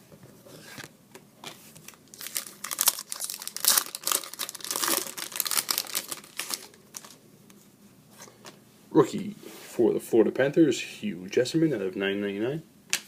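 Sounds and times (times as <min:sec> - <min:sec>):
wrapper crinkling: 0:01.8 - 0:07.2.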